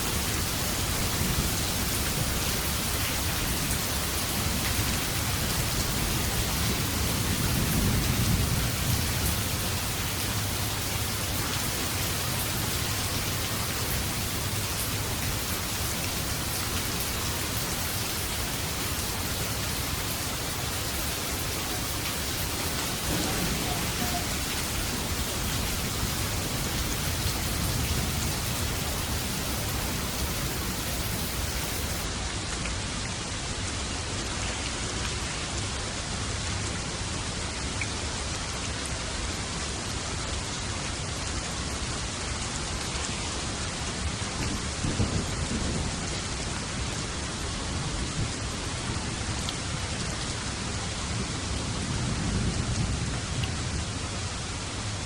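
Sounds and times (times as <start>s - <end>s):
steady rain falling: 0.0s - 55.0s
distant thunder rumble: 17.2s - 32.1s.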